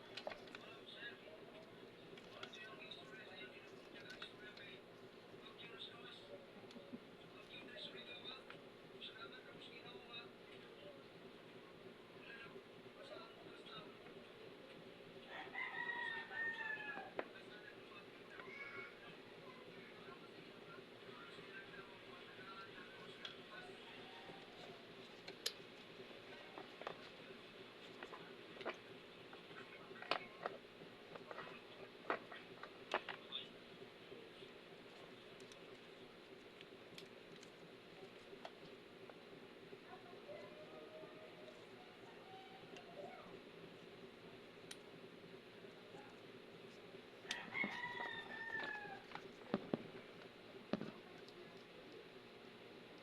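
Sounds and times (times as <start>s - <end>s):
rooster crowing: 15.3s - 17.2s, 47.3s - 49.1s.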